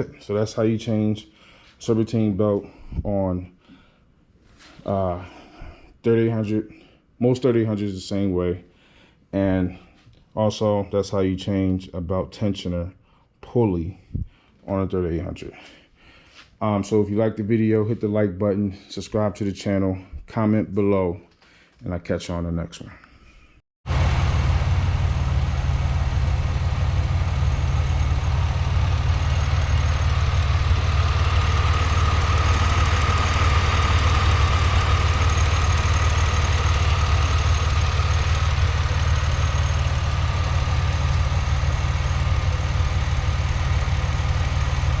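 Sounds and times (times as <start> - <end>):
car engine idling: 23.9 - 45.0.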